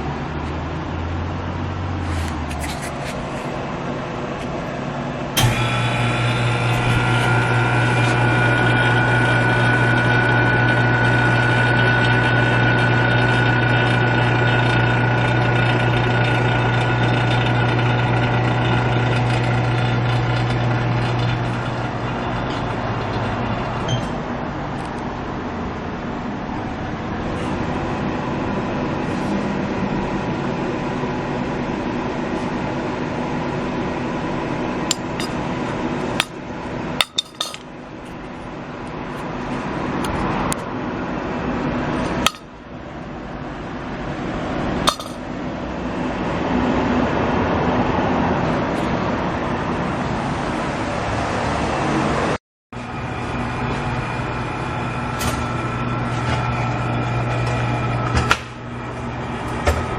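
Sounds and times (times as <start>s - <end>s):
mechanical hum: 0.0s - 59.9s
metallic tool clinks and knocks: 34.9s - 35.4s, 37.0s - 37.7s, 42.3s - 42.5s, 44.9s - 45.2s.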